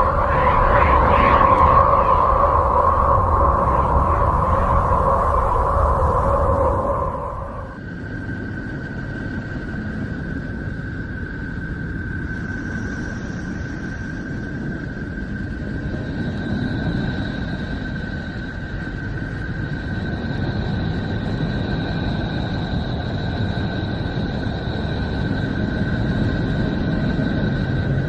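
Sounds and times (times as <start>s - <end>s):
fainter higher tones: 0.0s - 7.8s
steady high tone: 0.0s - 7.8s
low noisy rumble: 0.0s - 8.8s.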